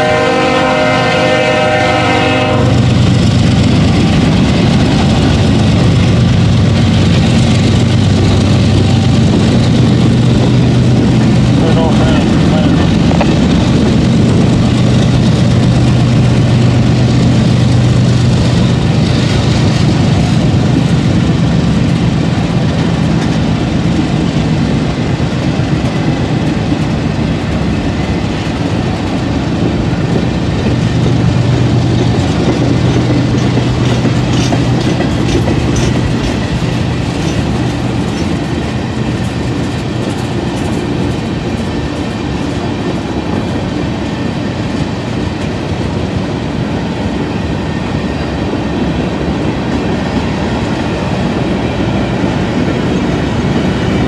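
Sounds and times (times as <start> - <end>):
freight train rumbling past: 0.0 - 54.0
wheels clicking over rail joints: 2.9 - 43.7.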